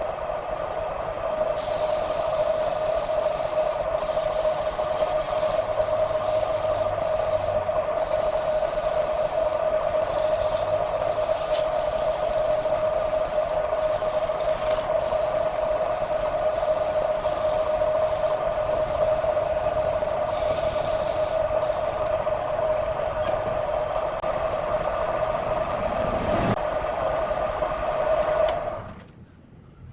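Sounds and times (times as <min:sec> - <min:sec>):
sanding hiss on spinning wood: 0:01.5 - 0:22.2.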